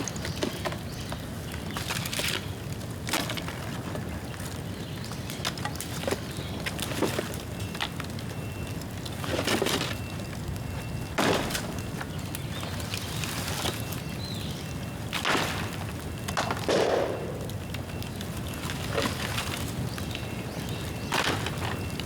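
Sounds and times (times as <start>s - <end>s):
bonfire crackling: 0.0s - 22.0s
bamboo bursting pops: 15.1s - 20.1s.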